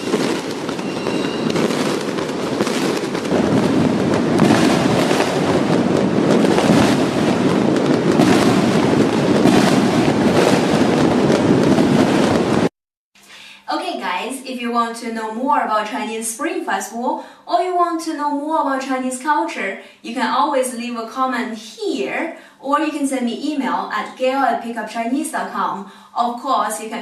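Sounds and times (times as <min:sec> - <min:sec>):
firecrackers crackling: 0:00.0 - 0:12.7.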